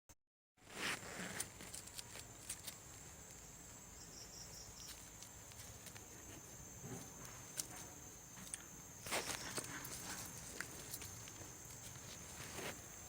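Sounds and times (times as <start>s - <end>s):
high-pitched insect chirring: 3.9s - 13.0s.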